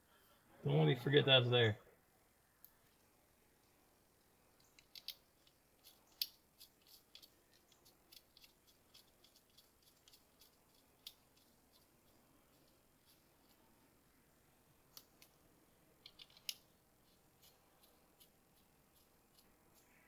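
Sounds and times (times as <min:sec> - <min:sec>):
small parts clicking: 0:03.6 - 0:13.6, 0:14.9 - 0:15.4, 0:16.0 - 0:20.0.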